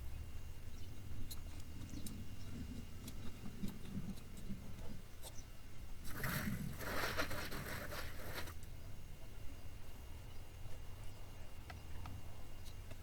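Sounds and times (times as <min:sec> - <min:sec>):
scraping against tree bark: 0:06.0 - 0:08.6.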